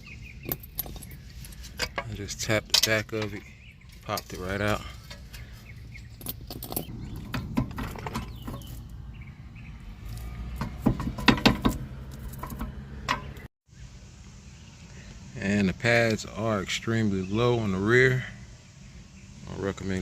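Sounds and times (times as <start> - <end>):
metal tools clinking and knocking: 0.4 - 8.9, 10.0 - 13.5.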